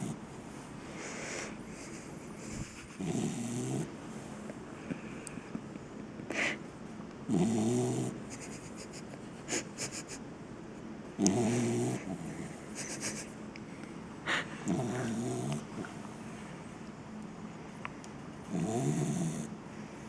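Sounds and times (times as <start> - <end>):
sharp breath sounds: 0.9 - 1.9, 14.2 - 14.7
dog snoring: 2.6 - 3.9, 7.3 - 8.7, 11.2 - 13.2, 14.6 - 15.9, 18.5 - 19.5.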